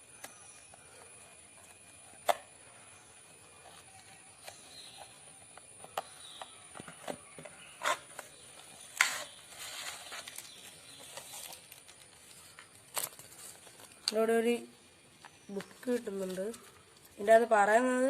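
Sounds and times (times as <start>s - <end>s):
packaging rustling: 7.8s - 14.3s
packaging crinkle: 7.8s - 14.5s.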